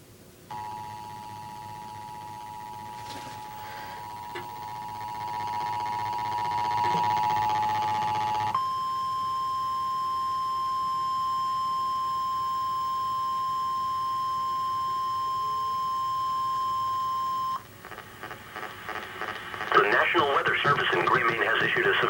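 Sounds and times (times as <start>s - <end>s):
two-tone alarm: 0.5s - 17.6s.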